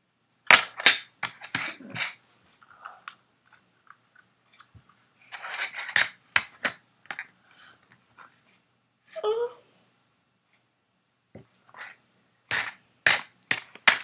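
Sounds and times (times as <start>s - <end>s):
puzzle cube layers clacking: 0.2s - 2.2s, 5.3s - 7.3s, 12.5s - 14.0s.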